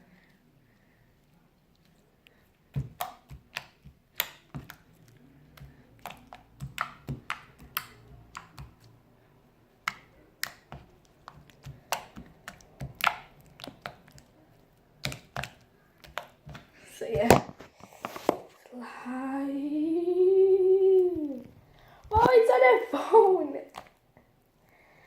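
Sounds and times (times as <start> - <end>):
slime popping and clicking: 2.7 - 4.9, 5.5 - 8.9, 9.8 - 14.3, 15.0 - 17.4.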